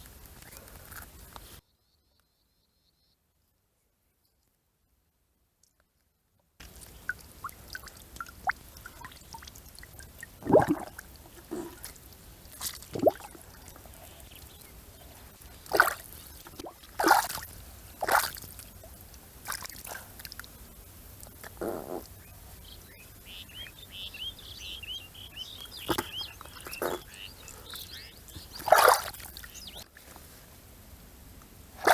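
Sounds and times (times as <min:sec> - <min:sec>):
water splashing and dripping: 0:06.6 - 0:14.7, 0:15.4 - 0:20.5, 0:28.4 - 0:30.0.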